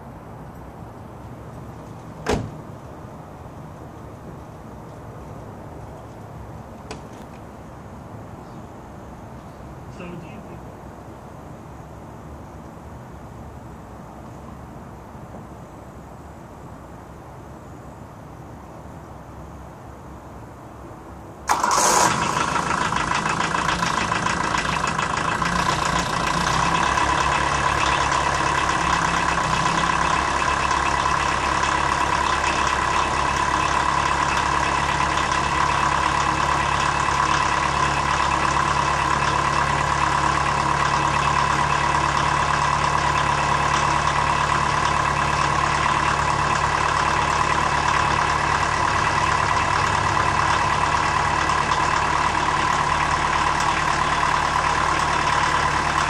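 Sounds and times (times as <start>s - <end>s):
diesel engine idling roughly: 21.5s - 56.0s.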